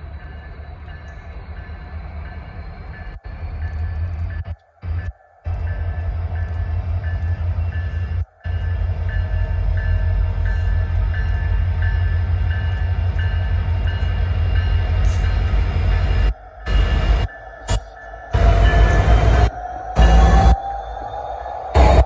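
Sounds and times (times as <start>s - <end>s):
train passing with heavy rumble: 0.0s - 22.0s
locomotive bell ringing: 5.7s - 22.0s.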